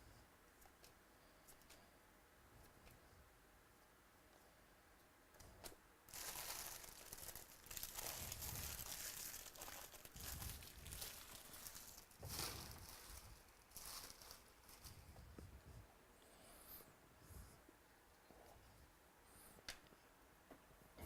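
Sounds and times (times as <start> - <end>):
card pack wrappers crinkling: 6.1 - 15.0.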